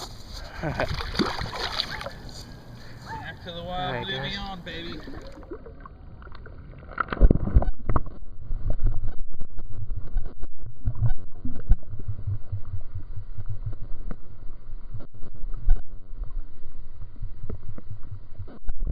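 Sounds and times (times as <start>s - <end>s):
underwater rumbling and thumping: 4.9s - 18.9s.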